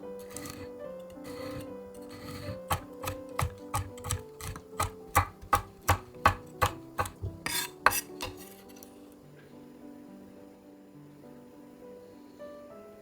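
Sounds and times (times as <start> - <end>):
soft background music: 0.0 - 13.0
knife chopping on cutting board: 0.2 - 8.6.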